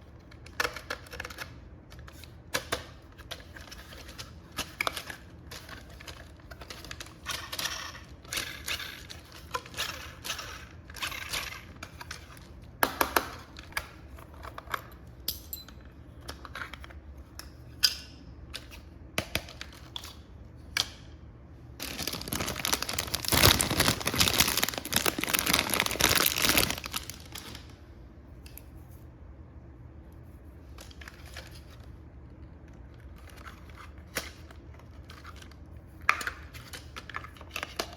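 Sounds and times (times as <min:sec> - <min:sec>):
plastic and cardboard crinkling: 0:21.7 - 0:27.8
packaging rustling and tearing: 0:21.8 - 0:27.7.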